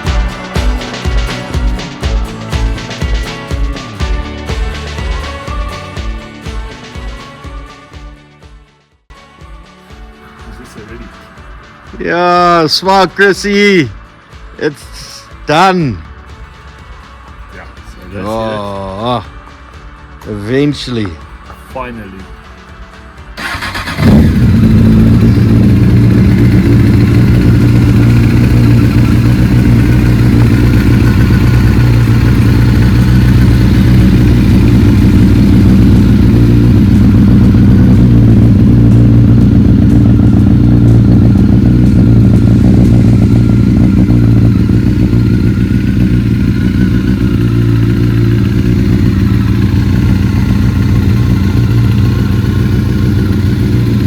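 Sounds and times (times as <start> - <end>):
motorcycle engine idling: 0.0 - 7.2, 23.4 - 54.0.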